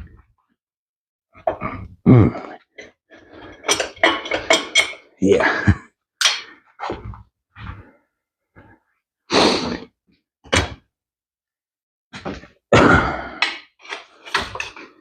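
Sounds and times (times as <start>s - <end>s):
metal parts and tools clattering: 2.8s - 5.2s, 13.8s - 15.0s.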